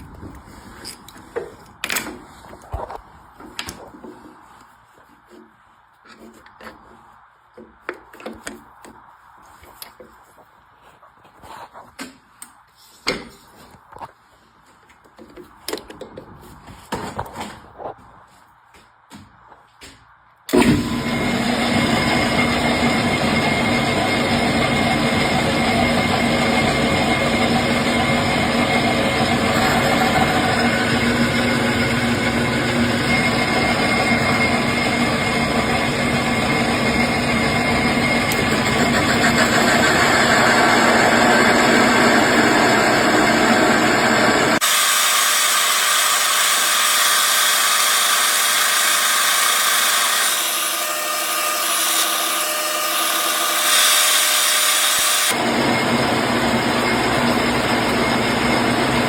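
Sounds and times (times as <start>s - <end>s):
lathe cutting hiss: 20.5s - 59.0s
metal lathe running: 20.5s - 59.0s.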